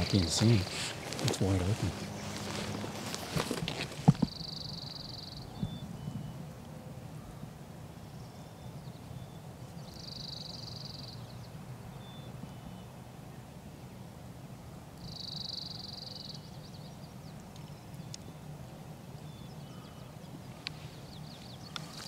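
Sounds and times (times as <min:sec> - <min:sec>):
songbird trilling: 0:00.0 - 0:06.5, 0:08.3 - 0:12.8, 0:15.0 - 0:18.4
faint thin bird call notes: 0:19.6 - 0:22.0.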